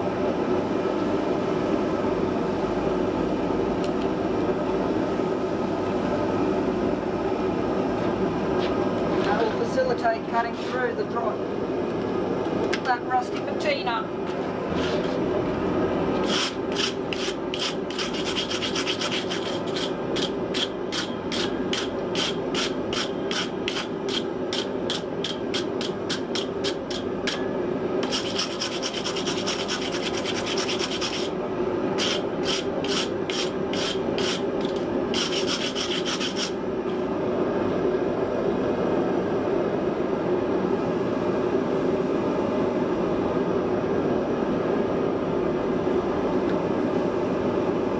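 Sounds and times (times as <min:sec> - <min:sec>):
hand scraping on steel: 0:14.7 - 0:15.3, 0:16.2 - 0:27.4, 0:28.0 - 0:31.4, 0:32.0 - 0:36.6.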